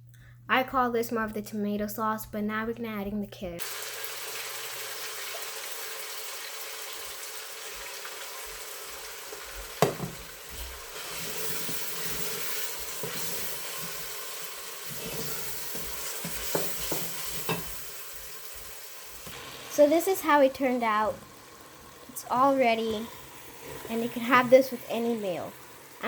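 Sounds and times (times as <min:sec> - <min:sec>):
sauce sizzling in a pan: 0:03.6 - 0:26.0
sharp knocks: 0:09.8 - 0:10.2.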